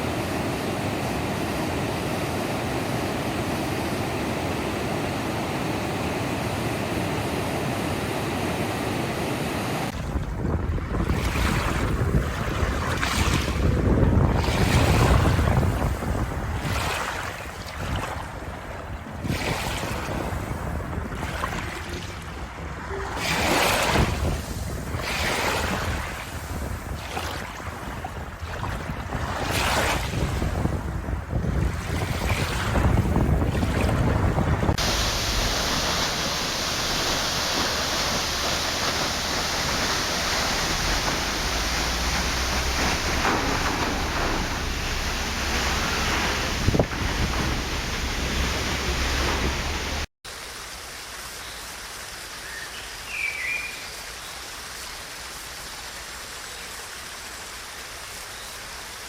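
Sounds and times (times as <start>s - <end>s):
waves surging: 0.0s - 51.0s
rushing water hiss: 34.7s - 59.0s.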